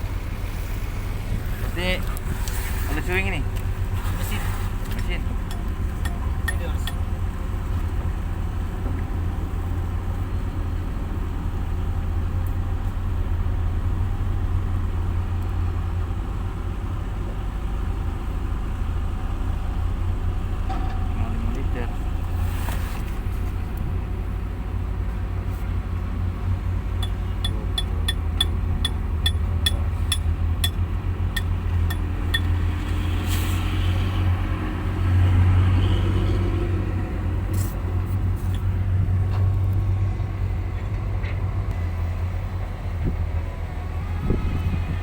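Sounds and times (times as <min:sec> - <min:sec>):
heavy diesel engine rumbling: 0:00.0 - 0:45.0
sharp ticks: 0:27.0 - 0:30.8.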